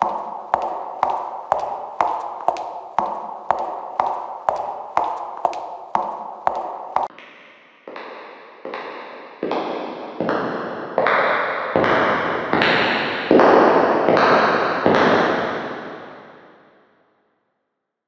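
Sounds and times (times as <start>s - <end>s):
echoing footsteps walking: 0.0s - 15.3s.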